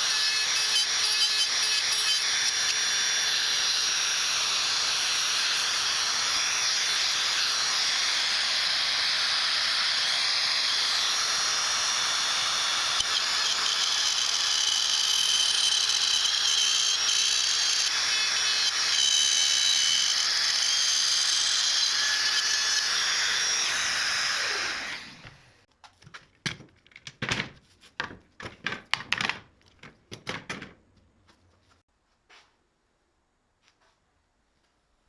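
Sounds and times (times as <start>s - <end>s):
power tool running on wood: 0.0s - 25.6s
sharp knocks and clicks: 26.0s - 30.8s.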